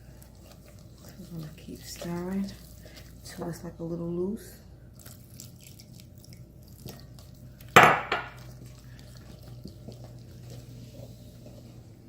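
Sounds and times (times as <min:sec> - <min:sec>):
kitchenware clattering: 0:07.8 - 0:08.4.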